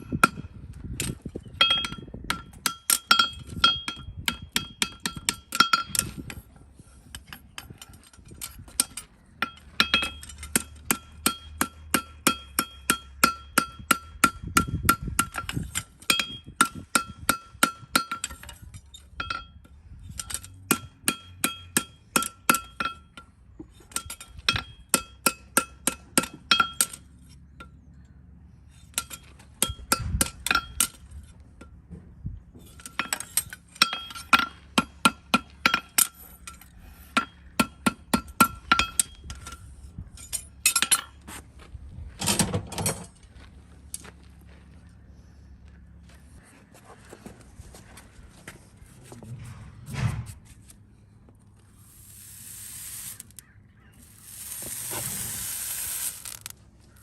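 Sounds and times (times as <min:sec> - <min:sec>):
hammer striking steel horseshoe: 0:00.0 - 0:06.4, 0:07.1 - 0:27.7, 0:28.9 - 0:31.8, 0:32.7 - 0:39.6, 0:40.2 - 0:41.2.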